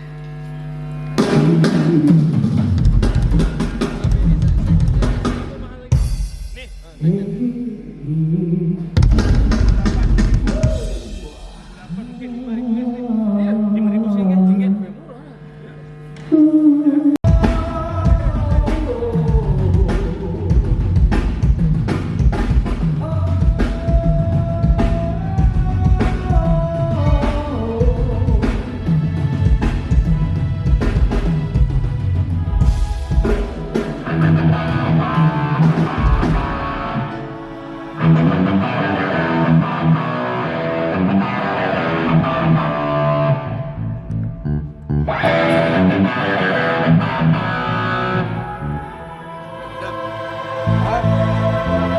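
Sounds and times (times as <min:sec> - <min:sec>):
bass: 0:00.0 - 0:16.6, 0:17.2 - 0:51.9
drum kit: 0:01.2 - 0:07.1, 0:09.0 - 0:12.4, 0:17.2 - 0:37.3
lead melody of long held notes: 0:32.6 - 0:51.9
electric guitar solo: 0:33.6 - 0:49.7.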